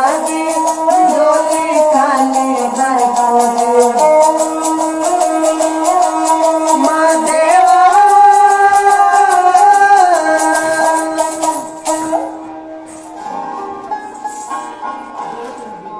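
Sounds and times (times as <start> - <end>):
person singing long notes: 0.0 - 12.2.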